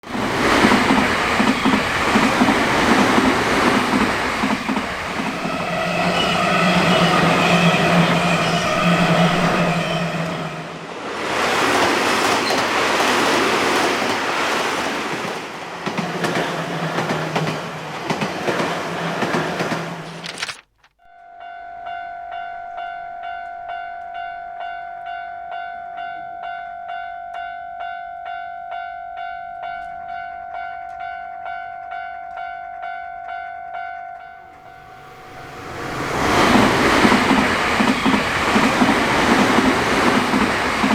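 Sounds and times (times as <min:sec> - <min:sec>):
train wheels clattering on rails: 0:00.0 - 0:10.4, 0:11.2 - 0:20.2, 0:34.5 - 0:40.9
crossing warning bell: 0:00.2 - 0:10.8, 0:21.0 - 0:40.9.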